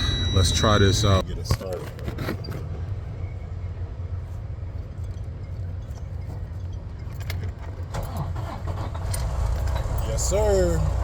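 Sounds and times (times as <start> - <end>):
diesel truck engine idling: 8.0 - 11.0.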